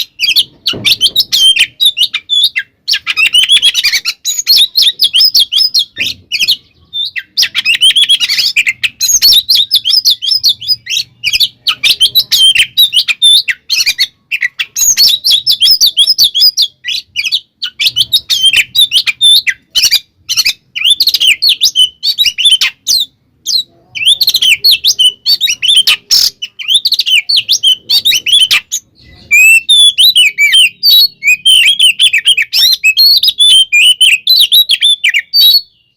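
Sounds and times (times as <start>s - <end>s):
bird singing rapid varied song: 0.0s - 35.9s.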